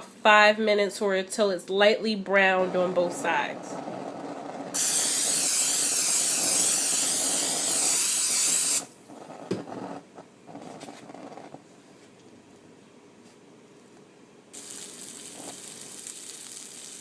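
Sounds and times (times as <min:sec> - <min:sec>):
aerosol spray hiss: 0:04.8 - 0:08.9, 0:14.6 - 0:17.0.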